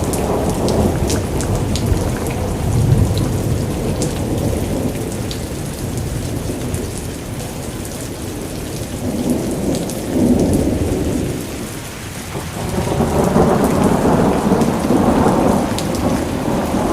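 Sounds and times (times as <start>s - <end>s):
rain falling: 0.0s - 16.9s
thunder rumbling: 0.0s - 16.9s.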